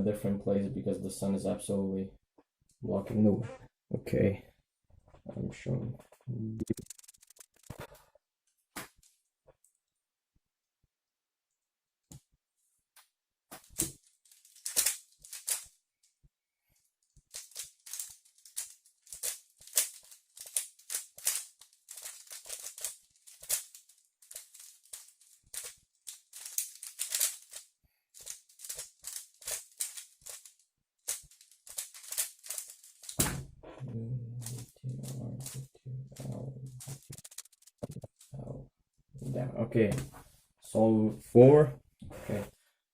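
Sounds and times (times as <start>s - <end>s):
puzzle cube plastic clicking: 13.7s - 15.7s, 17.3s - 27.6s, 28.2s - 33.2s.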